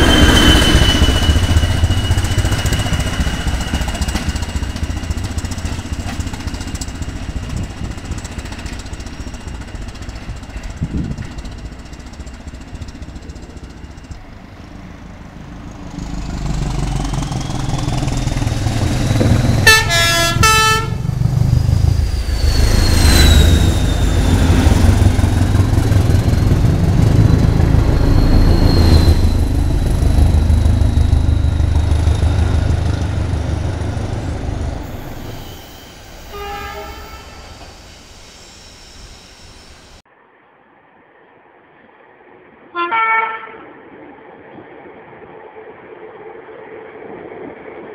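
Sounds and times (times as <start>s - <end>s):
train rumbling past: 0.0s - 40.4s
high whine: 12.1s - 40.0s
train horn blast: 19.6s - 21.1s, 36.2s - 37.6s, 42.8s - 43.7s.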